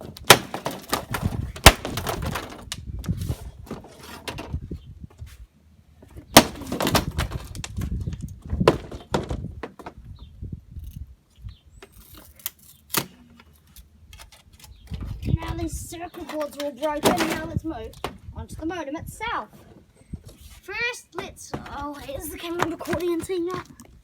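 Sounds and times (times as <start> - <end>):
hard blows smashing circuit boards: 0.2 - 2.6, 6.4 - 7.4.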